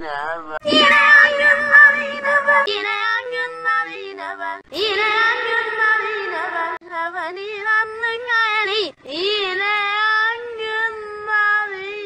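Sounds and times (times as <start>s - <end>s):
high sung voice with effects: 0.0s - 11.9s
flat synthetic tones: 0.6s - 2.7s, 4.7s - 6.8s.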